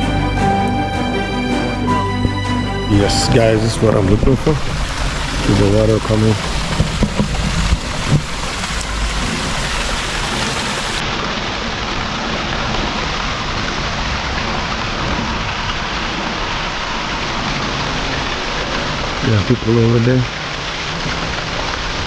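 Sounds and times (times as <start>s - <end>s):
water rushing: 2.5s - 19.3s.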